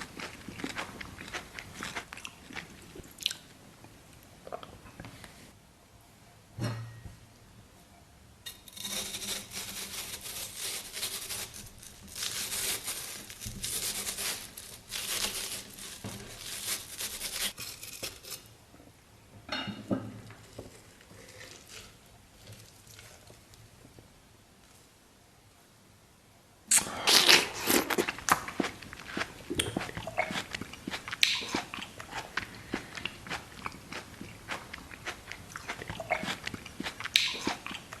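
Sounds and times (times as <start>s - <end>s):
crinkling from handling food: 8.5s - 18.6s.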